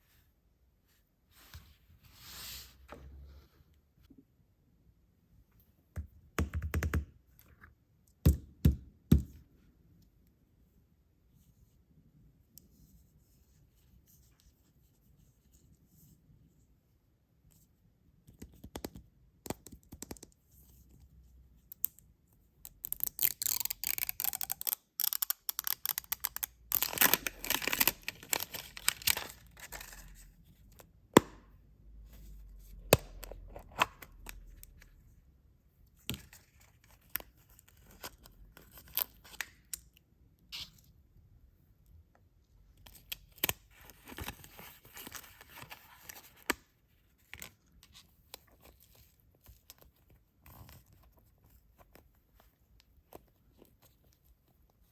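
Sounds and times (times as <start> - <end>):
packaging tearing and crinkling: 26.7 - 29.8.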